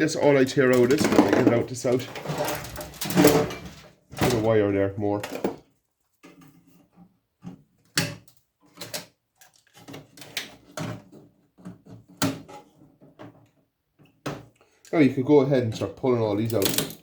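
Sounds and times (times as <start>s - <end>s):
metallic clanks and clicks: 16.4s - 17.0s.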